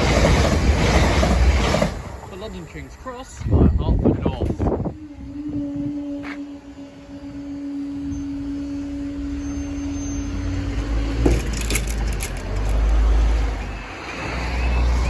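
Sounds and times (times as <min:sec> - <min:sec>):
train rumbling past: 0:00.0 - 0:15.0
sharp click and rattling: 0:11.3 - 0:13.0.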